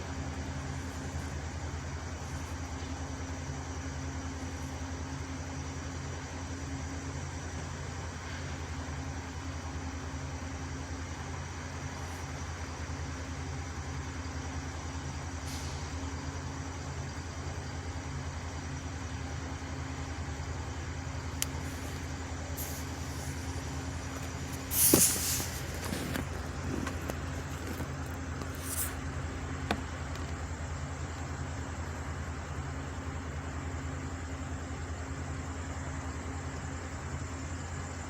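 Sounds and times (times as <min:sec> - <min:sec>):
truck engine droning: 0:00.0 - 0:35.8
loud bang with hiss: 0:22.6 - 0:26.1.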